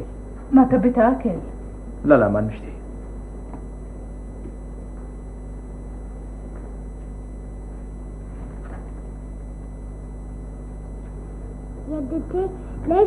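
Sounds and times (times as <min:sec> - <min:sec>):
low hum and hiss: 0:00.0 - 0:13.0.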